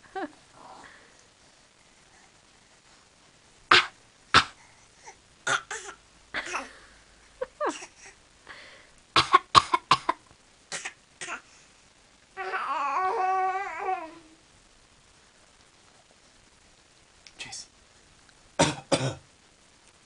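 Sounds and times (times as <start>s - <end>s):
baby's mimicked coughs: 3.7s - 4.6s, 5.4s - 6.7s, 9.2s - 11.4s, 18.6s - 19.2s.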